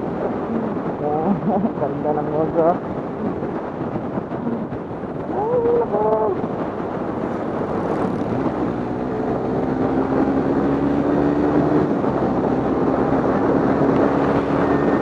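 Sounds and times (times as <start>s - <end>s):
wind rushing over microphone: 0.0s - 15.0s.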